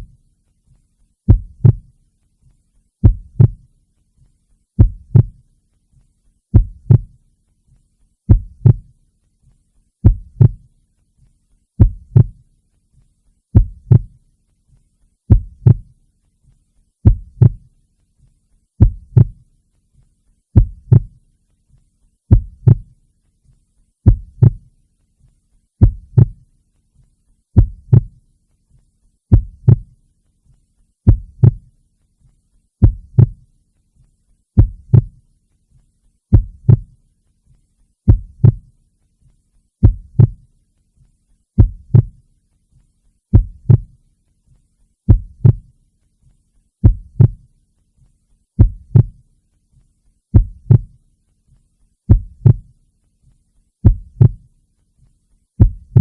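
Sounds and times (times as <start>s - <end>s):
heartbeat: 1.3s - 2.0s, 3.0s - 3.7s, 4.8s - 5.5s, 6.5s - 7.2s, 8.3s - 9.0s, 10.0s - 10.7s, 11.8s - 12.5s, 13.5s - 14.2s, 15.3s - 16.0s, 17.0s - 17.8s, 18.8s - 19.5s, 20.5s - 21.2s, 22.3s - 23.0s, 24.0s - 24.7s, 25.8s - 26.5s, 27.6s - 28.2s, 29.3s - 30.0s, 31.0s - 31.7s, 32.8s - 33.5s, 34.6s - 35.2s, 36.3s - 37.0s, 38.1s - 38.8s, 39.8s - 40.5s, 41.6s - 42.2s, 43.3s - 44.0s, 45.1s - 45.8s, 46.8s - 47.5s, 48.6s - 49.2s, 50.3s - 51.0s, 52.1s - 52.8s, 53.8s - 54.5s, 55.6s - 56.0s.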